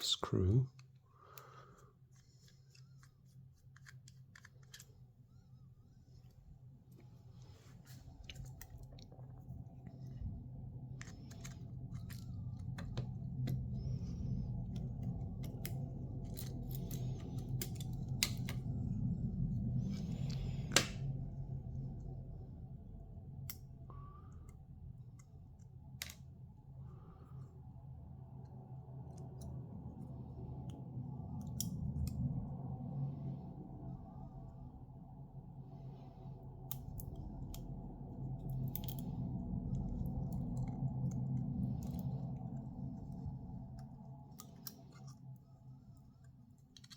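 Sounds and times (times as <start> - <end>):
steady low hum: 0.0 - 46.9
small tool clicks and scraping: 2.1 - 5.1, 46.2 - 46.9.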